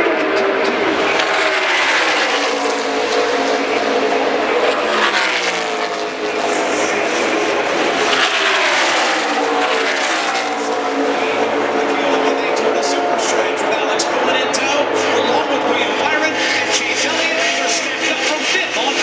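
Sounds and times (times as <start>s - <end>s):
race cars passing: 0.0s - 19.0s.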